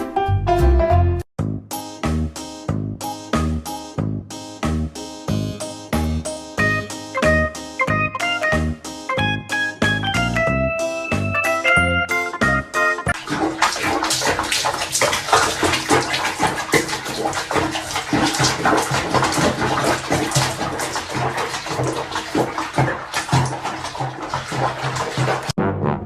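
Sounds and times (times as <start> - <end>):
water splashing and running: 13.1 - 25.6.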